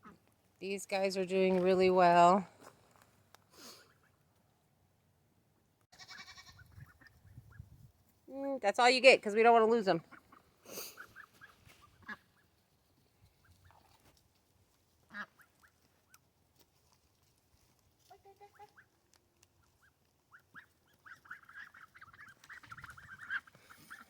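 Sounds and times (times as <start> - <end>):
fowl honk: 10.1 - 12.4, 15.1 - 15.7, 20.3 - 24.0
farm fowl calling: 20.3 - 24.0.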